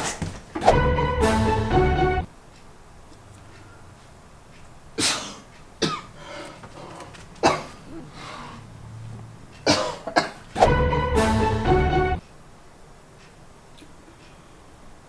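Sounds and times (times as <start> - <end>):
person coughing: 5.0 - 6.2, 7.4 - 8.4, 9.7 - 10.5.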